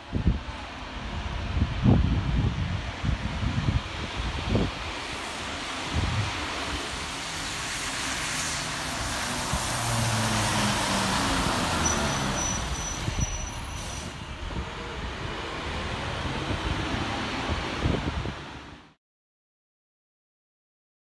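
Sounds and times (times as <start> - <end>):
vehicle passing: 7.2 - 13.2.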